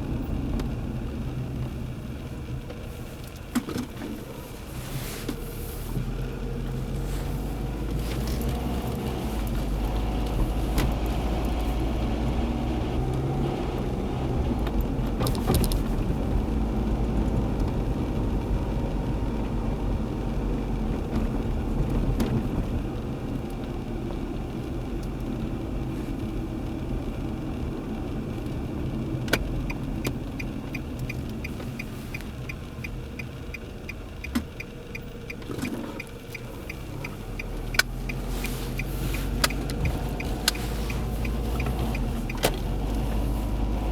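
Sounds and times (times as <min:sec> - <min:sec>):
car engine running: 0:00.0 - 0:43.9
road rumble: 0:00.0 - 0:43.9
rapid even ticking: 0:29.6 - 0:43.7.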